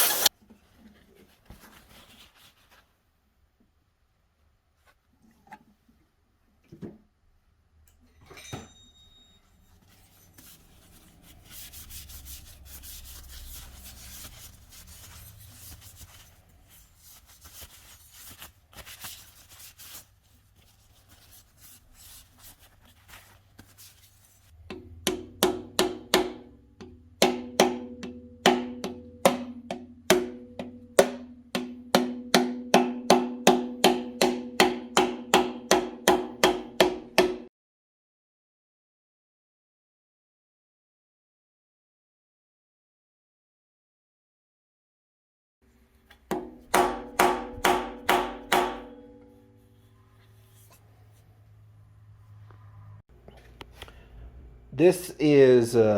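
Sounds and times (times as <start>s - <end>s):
hammer taps with metallic ring: 8.2s - 9.4s, 26.8s - 35.2s
soft rubbing: 9.8s - 24.6s.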